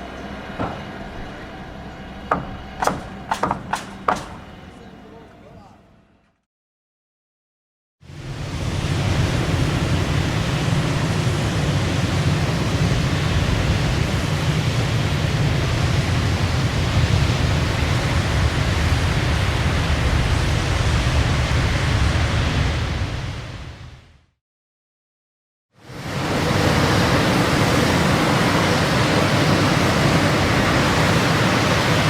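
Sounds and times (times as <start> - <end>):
blizzard wind rushing: 8.0 - 24.3, 25.8 - 32.0.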